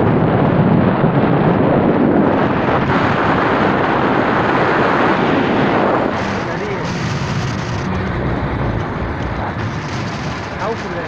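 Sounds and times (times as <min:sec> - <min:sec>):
vehicle rushing noise: 0:00.0 - 0:11.0
wind buffeting microphone: 0:00.0 - 0:11.0.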